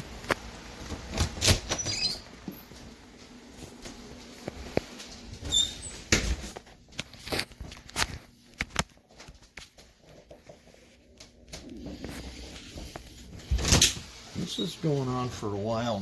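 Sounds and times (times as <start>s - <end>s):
footsteps on a floor: 2.4s - 15.8s.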